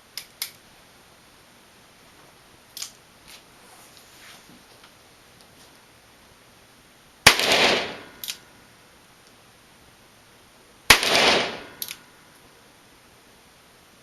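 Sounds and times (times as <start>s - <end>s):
handgun shots echoing: 7.3s - 8.4s, 10.9s - 12.0s.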